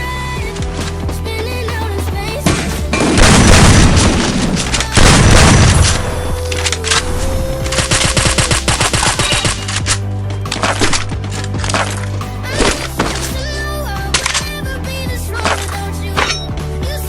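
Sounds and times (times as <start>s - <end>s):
background music: 0.0s - 17.0s
video game gunfire: 2.5s - 6.4s.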